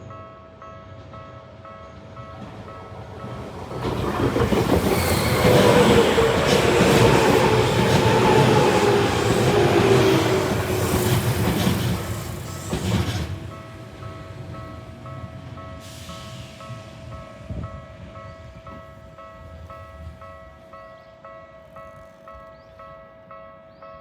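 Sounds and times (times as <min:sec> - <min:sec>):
wheels clacking over rail joints: 0:02.3 - 0:14.8.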